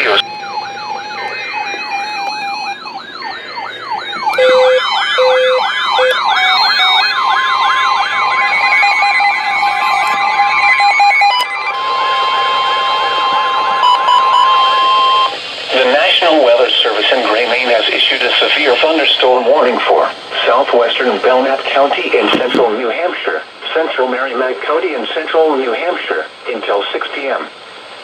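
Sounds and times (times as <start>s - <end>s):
sweeping siren-like alarms: 0.0s - 16.6s
steady electronic tones: 0.0s - 23.8s
steady single alarm tone: 0.2s - 15.4s.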